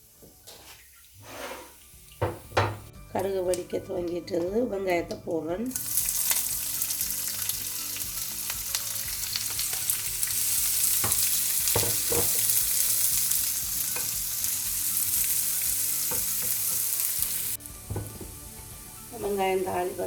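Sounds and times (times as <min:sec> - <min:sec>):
onions sizzling in oil: 0:00.0 - 0:02.9, 0:05.6 - 0:20.0
spoon stirring a pan: 0:10.8 - 0:17.3.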